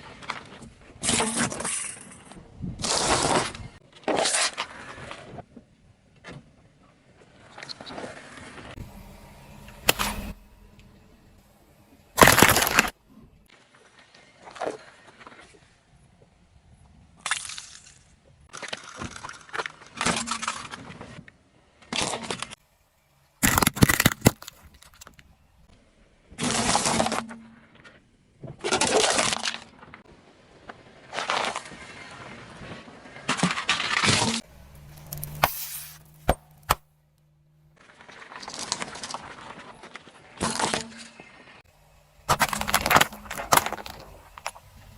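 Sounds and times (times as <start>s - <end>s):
objects crunching under car tyres: 9.7s - 13.4s, 23.4s - 25.6s, 33.4s - 36.9s, 42.2s - 44.9s.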